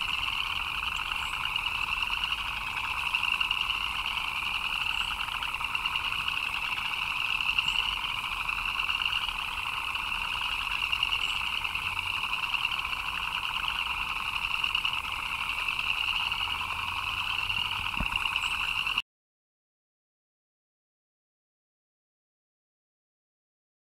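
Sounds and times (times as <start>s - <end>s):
frogs calling: 0.0s - 19.0s.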